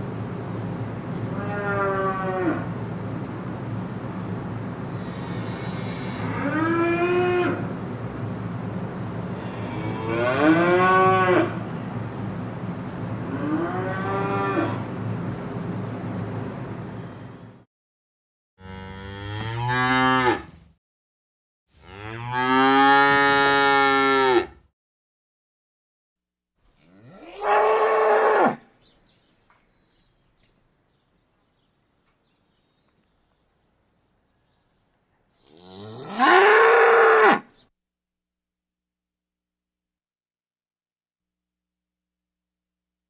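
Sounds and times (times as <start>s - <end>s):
cattle mooing: 1.3s - 2.7s, 5.0s - 7.7s, 9.4s - 11.6s, 13.3s - 14.8s, 18.6s - 20.5s, 21.8s - 24.6s, 26.8s - 28.6s, 35.4s - 37.5s.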